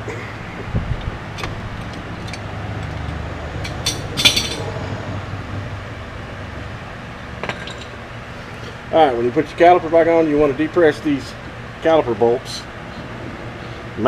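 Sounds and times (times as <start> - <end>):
low fan hum: 0.0 - 14.0
metal tools clinking: 1.3 - 4.8, 7.4 - 8.0.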